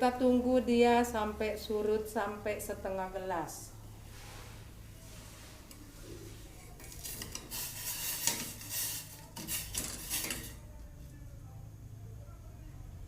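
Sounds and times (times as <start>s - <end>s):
water boiling: 4.6s - 11.0s
spoon scraping in a pot: 5.1s - 11.1s.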